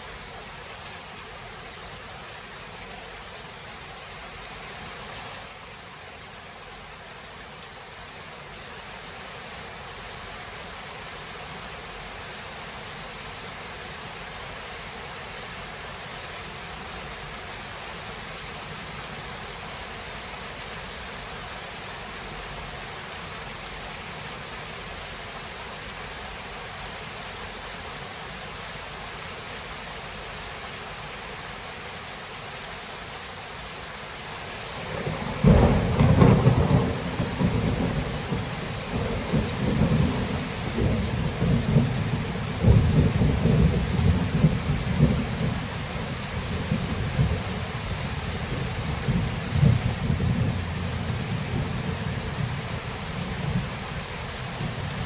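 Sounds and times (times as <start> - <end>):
steady rain hissing: 0.0 - 55.0
thunderclap and rumbling thunder: 34.8 - 47.6, 48.2 - 53.8.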